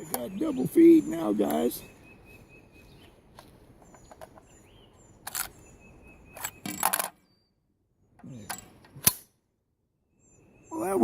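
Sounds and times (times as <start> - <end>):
rifle action metallic clacks: 5.2 - 5.6, 6.3 - 7.2.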